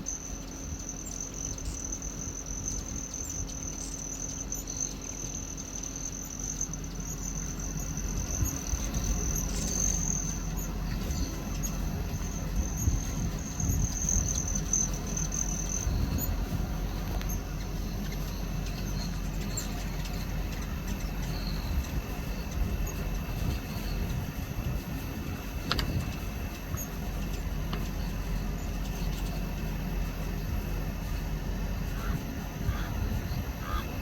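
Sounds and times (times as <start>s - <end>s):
high chirps: 0.0s - 24.0s
hummingbird squeaking: 0.0s - 24.1s, 31.8s - 34.0s
low rumble: 0.2s - 34.0s.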